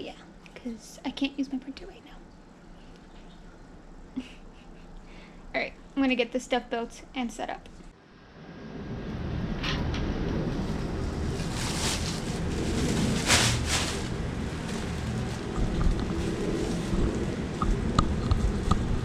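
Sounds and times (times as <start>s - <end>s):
wind rumble on microphone: 8.4s - 19.0s.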